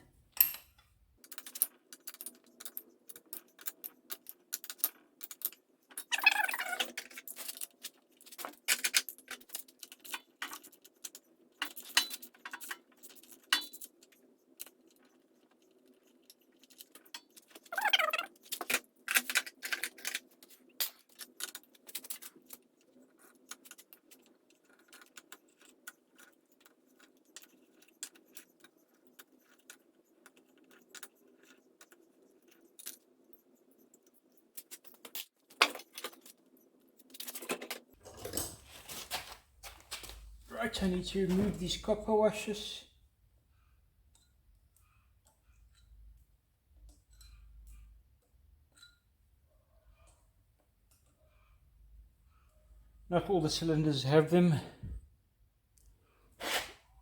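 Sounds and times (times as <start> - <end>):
metal tools clinking on bolts: 0.4 - 0.8.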